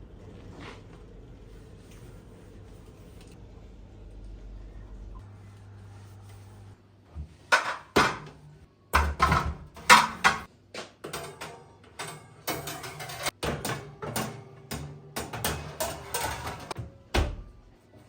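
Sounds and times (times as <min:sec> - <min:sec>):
dishes and utensils clattering: 0:07.5 - 0:08.3, 0:09.0 - 0:16.9.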